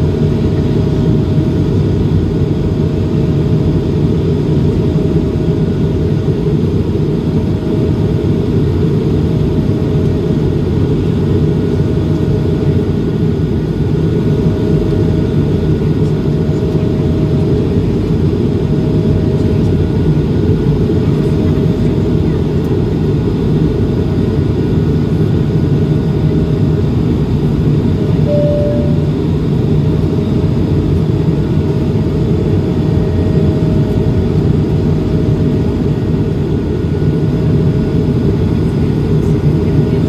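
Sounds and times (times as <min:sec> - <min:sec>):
jet engine and airflow roar: 0:00.0 - 0:40.0
faint thin tone: 0:28.3 - 0:29.4.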